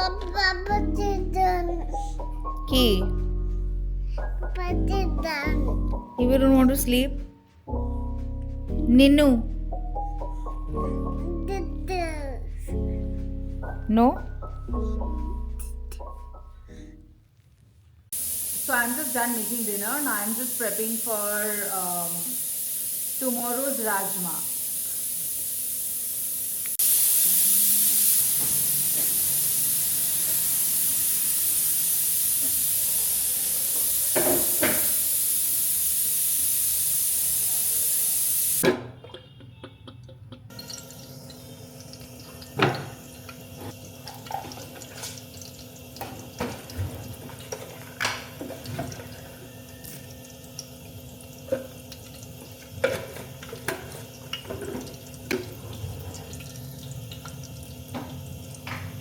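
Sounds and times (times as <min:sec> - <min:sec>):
tap running into sink: 0:28.3 - 0:29.4, 0:33.7 - 0:35.2, 0:42.2 - 0:49.3, 0:51.5 - 0:56.3, 0:57.2 - 0:59.0.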